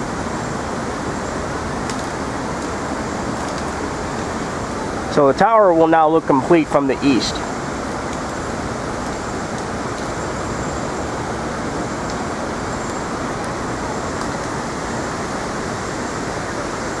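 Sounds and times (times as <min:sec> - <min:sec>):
city traffic noise: 0:00.2 - 0:17.0.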